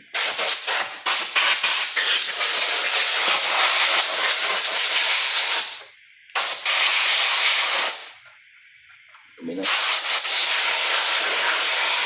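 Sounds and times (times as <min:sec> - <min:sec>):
air jet hissing: 0:09.6 - 0:12.0.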